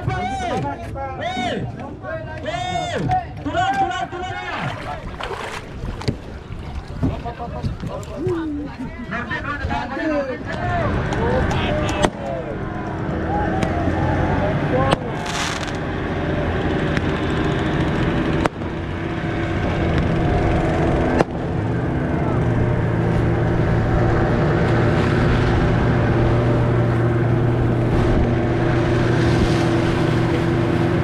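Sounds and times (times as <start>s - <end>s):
boat engine running: 3.0s - 31.0s.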